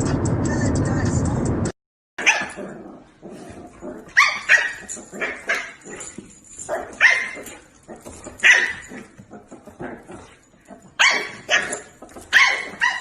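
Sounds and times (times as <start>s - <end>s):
dog barking: 2.2s - 2.7s, 4.1s - 6.1s, 6.7s - 7.7s, 8.4s - 9.1s, 11.0s - 13.0s.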